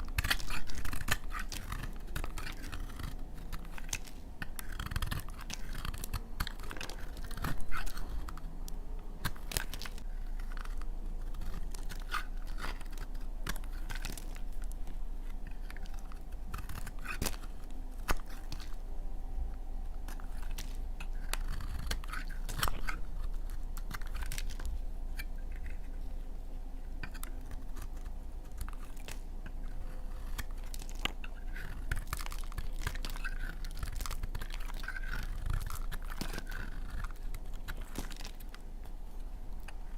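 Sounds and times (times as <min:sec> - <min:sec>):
faint low hum: 0:00.0 - 0:39.9
knife cutting through soap: 0:00.1 - 0:08.4.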